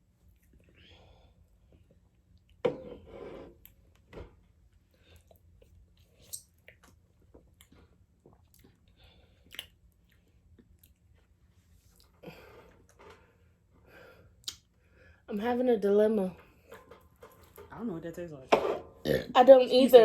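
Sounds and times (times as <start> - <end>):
lip smacks and clicks: 9.4 - 11.1, 14.4 - 14.7.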